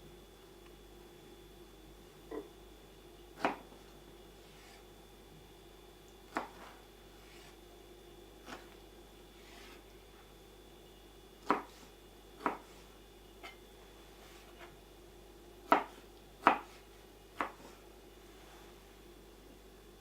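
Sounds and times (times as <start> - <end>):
knife chopping on cutting board: 3.4 - 3.8, 6.3 - 7.6, 11.4 - 13.6, 15.6 - 16.8, 17.4 - 17.8.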